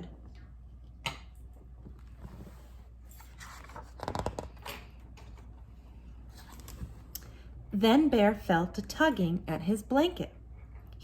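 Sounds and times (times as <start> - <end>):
book page turning: 3.1 - 4.5.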